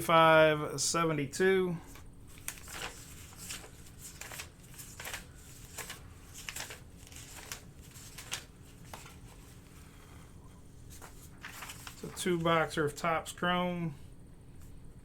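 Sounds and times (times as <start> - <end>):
rustling packaging: 2.3 - 9.8, 10.9 - 12.7.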